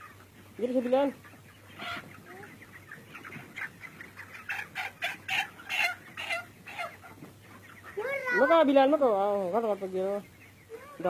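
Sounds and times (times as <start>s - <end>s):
chickens clucking: 0.0s - 11.0s.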